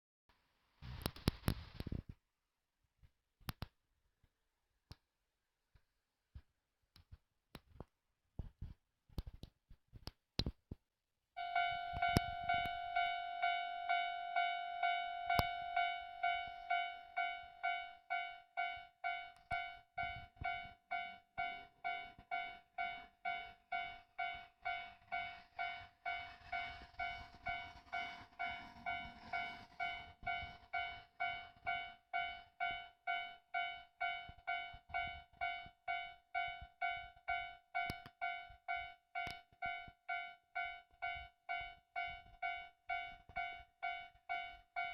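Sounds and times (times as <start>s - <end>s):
level crossing warning bell: 11.4s - 44.9s.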